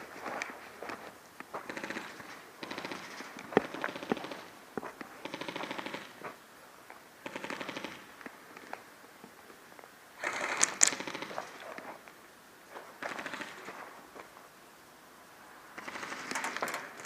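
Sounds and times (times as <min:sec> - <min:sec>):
airsoft guns full-auto fire: 0:01.6 - 0:04.5, 0:05.2 - 0:06.1, 0:07.2 - 0:08.1, 0:10.2 - 0:11.5, 0:13.0 - 0:13.7, 0:15.8 - 0:16.8.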